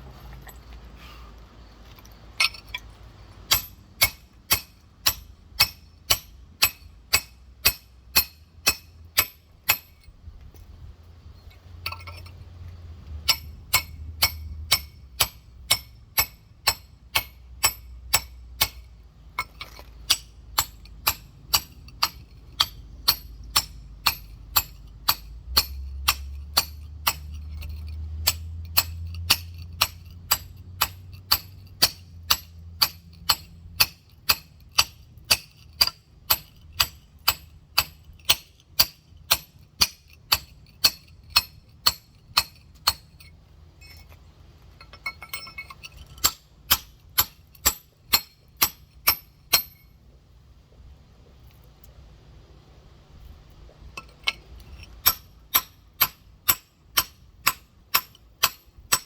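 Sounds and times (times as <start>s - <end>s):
hammer striking rock: 3.5s - 9.9s, 13.3s - 27.3s, 28.2s - 43.1s, 46.2s - 49.8s, 55.0s - 59.0s.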